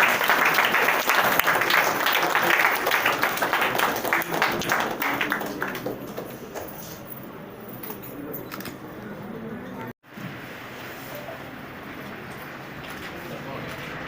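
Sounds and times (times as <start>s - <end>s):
audience applauding: 0.0s - 6.9s
low room murmur: 0.0s - 14.0s.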